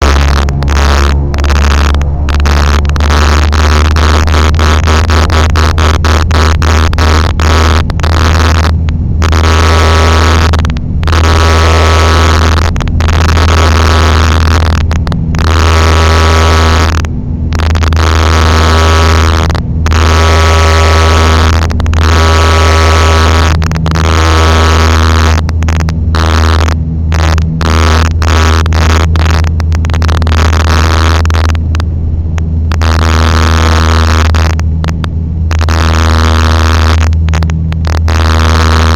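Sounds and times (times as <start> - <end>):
airliner engine rumble: 0.0 - 38.9
steady engine tones: 0.0 - 38.9.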